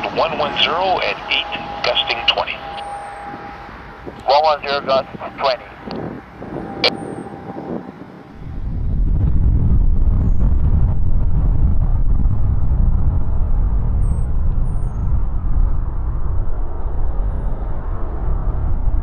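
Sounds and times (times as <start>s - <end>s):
jet aircraft rumble: 0.0s - 19.0s.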